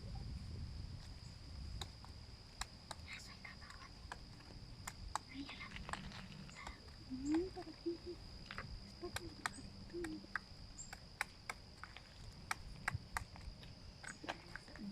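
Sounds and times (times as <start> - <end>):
high insect trill: 0.0 - 14.9
woodpecker pecking: 1.7 - 14.8.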